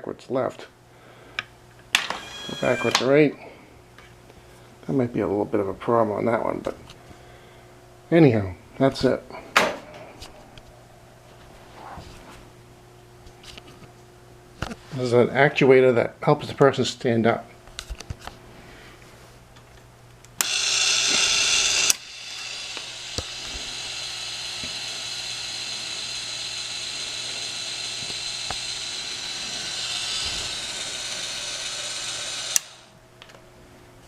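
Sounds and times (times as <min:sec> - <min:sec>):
electric actuator motor running: 0:01.9 - 0:03.3, 0:20.4 - 0:33.0.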